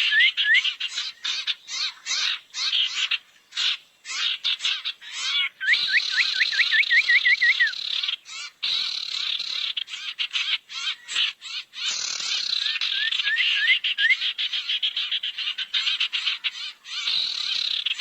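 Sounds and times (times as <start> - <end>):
rising whistled bird calls: 0.0 - 0.8, 5.1 - 8.5, 11.9 - 14.4.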